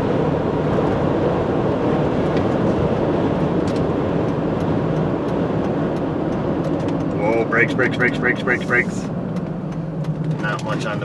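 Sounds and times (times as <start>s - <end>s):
car engine running: 3.4s - 11.0s.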